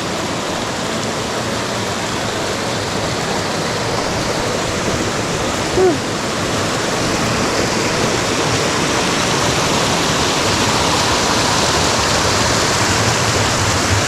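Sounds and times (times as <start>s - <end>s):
stream water rushing: 0.0s - 14.0s.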